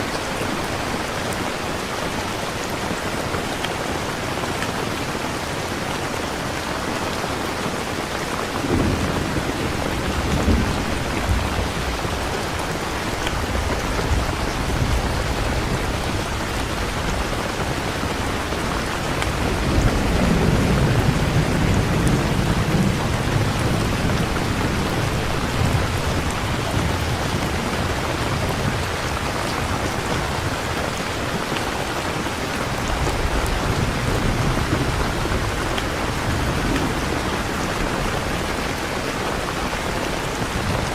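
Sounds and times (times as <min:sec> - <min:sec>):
heavy rain: 0:00.0 - 0:40.9
thunder rumbling: 0:08.5 - 0:31.5, 0:32.1 - 0:40.9.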